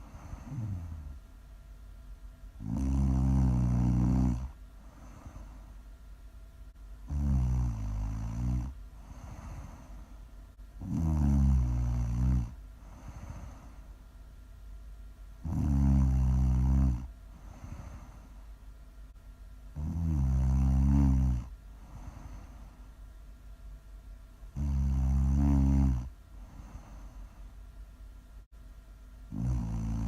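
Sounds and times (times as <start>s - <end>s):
faint breathing: 0.0s - 1.2s, 4.4s - 5.9s, 8.9s - 10.3s, 12.8s - 14.0s, 17.2s - 18.6s, 21.7s - 23.1s, 26.0s - 27.6s
person snoring loudly: 0.0s - 1.2s, 2.6s - 5.5s, 7.1s - 9.9s, 10.8s - 13.7s, 15.4s - 18.2s, 19.8s - 22.5s, 24.6s - 27.1s, 29.3s - 30.0s.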